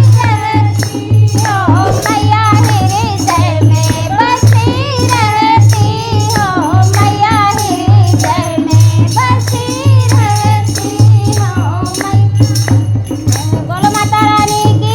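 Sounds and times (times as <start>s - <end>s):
jingling rattle percussion: 0.0s - 14.9s
person singing with vibrato: 1.0s - 6.1s
low drum beat: 1.7s - 3.6s.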